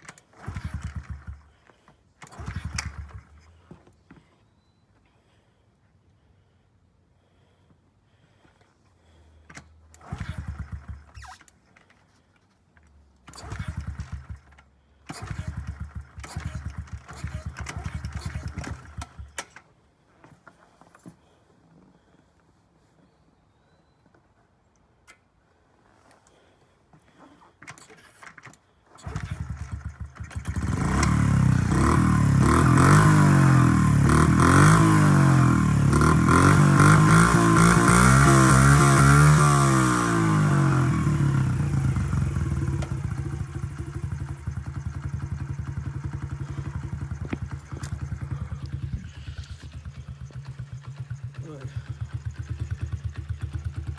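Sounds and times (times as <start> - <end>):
small motorcycle engine sputtering: 0.0 - 4.3, 9.2 - 12.0, 13.2 - 20.8, 26.3 - 53.9.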